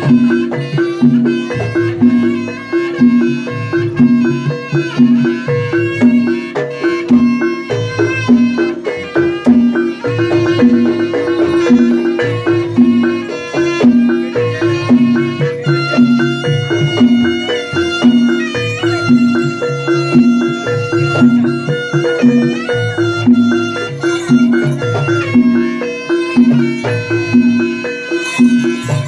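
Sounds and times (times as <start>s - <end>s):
metallophones and gongs: 0.0s - 29.0s
wavering high reed melody: 0.0s - 29.0s.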